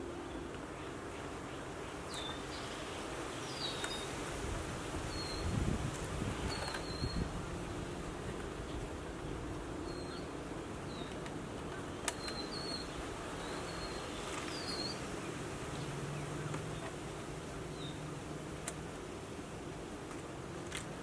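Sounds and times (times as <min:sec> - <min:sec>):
steady background hiss: 0:00.0 - 0:21.0.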